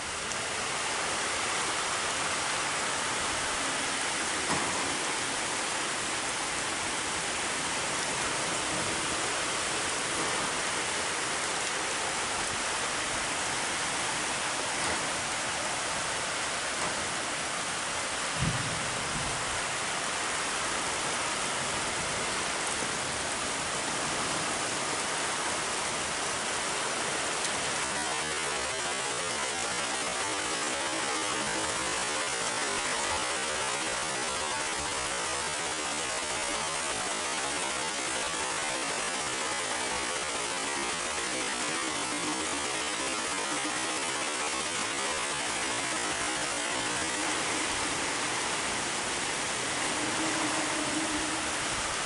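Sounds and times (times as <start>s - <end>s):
steady rain hiss: 0.0s - 52.0s
low thump: 18.4s - 19.4s.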